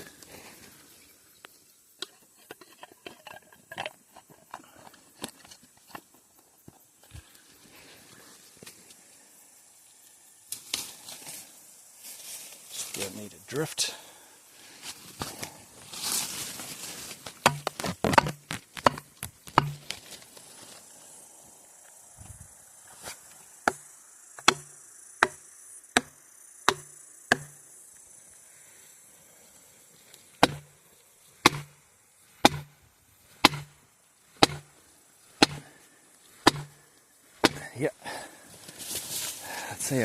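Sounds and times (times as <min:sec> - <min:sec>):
hammer driving wedges into wood: 0:17.3 - 0:20.0, 0:24.4 - 0:25.4, 0:26.0 - 0:27.6, 0:30.4 - 0:30.7, 0:31.4 - 0:31.8, 0:32.4 - 0:32.7, 0:33.4 - 0:33.8, 0:34.4 - 0:34.7, 0:35.4 - 0:35.7, 0:36.4 - 0:36.8, 0:37.4 - 0:37.7.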